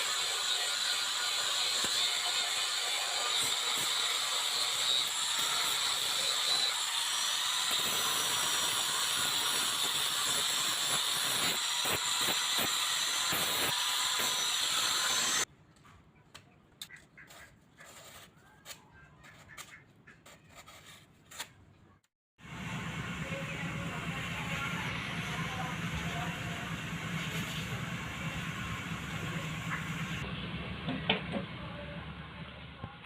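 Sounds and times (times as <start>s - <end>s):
power tool whining: 0.0s - 15.5s.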